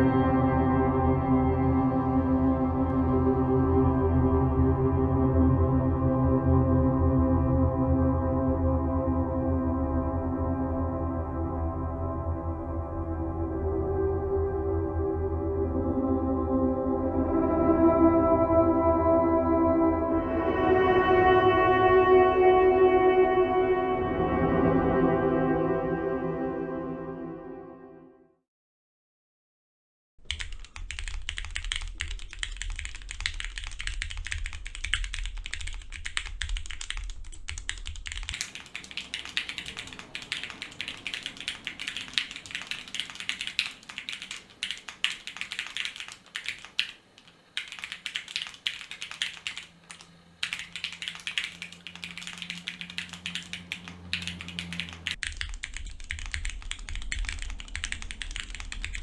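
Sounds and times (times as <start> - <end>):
fast mechanical keyboard typing: 30.3 - 59.0.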